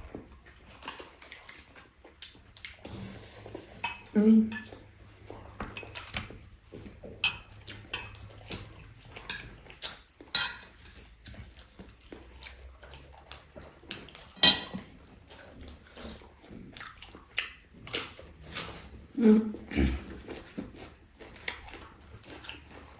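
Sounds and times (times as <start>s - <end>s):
cutlery and dishes clinking: 3.8s - 4.9s, 7.2s - 9.7s, 10.3s - 10.8s, 14.4s - 14.9s.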